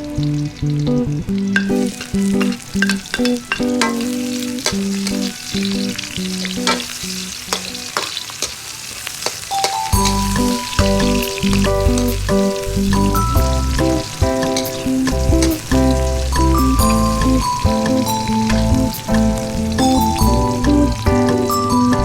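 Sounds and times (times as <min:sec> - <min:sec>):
background melody: 0:00.0 - 0:08.2, 0:09.5 - 0:22.0
food sizzling in a hot pan: 0:00.0 - 0:22.0
utensil clicking against pan: 0:01.6 - 0:05.3, 0:06.5 - 0:08.6.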